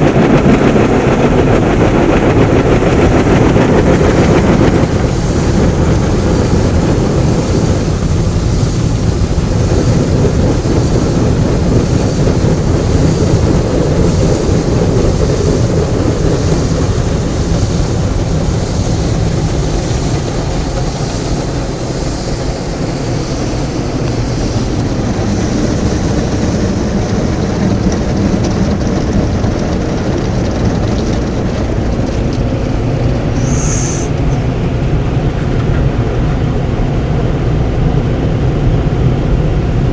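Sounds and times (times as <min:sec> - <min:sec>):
car wash machine running: 0:00.0 - 0:39.9
short high hiss: 0:33.4 - 0:34.3.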